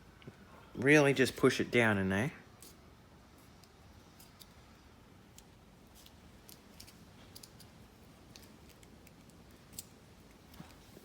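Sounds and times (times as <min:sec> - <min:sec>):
tape and sandpaper crinkling: 0:05.3 - 0:11.0.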